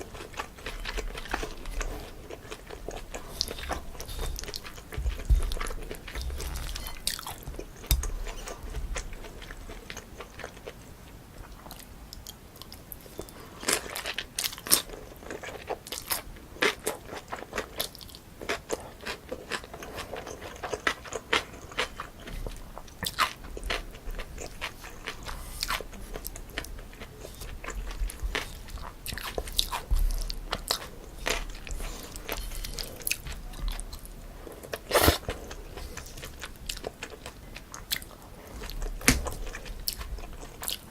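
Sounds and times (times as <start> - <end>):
chewing with sharp crunches: 0.0 - 40.9.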